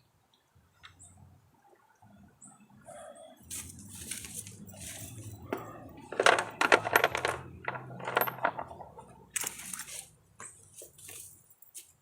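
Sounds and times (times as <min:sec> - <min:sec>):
metal tools clinking and rattling: 0:03.5 - 0:10.1
metal scrape: 0:09.4 - 0:10.1.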